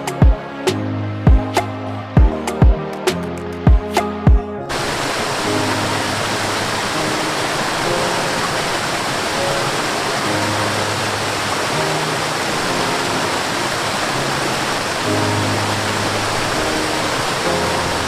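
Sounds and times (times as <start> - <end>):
soft music of held low notes: 0.0 - 18.0
waterfall rushing: 4.7 - 18.0.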